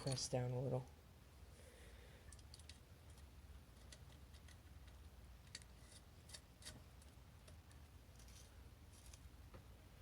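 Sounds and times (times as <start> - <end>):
small metal parts clicking: 2.3 - 7.6.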